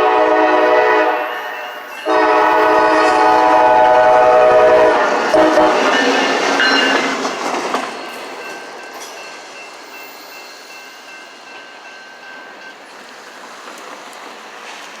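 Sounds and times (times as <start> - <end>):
locomotive horn: 0.0 - 6.3
diesel locomotive engine and wheels: 0.0 - 15.0.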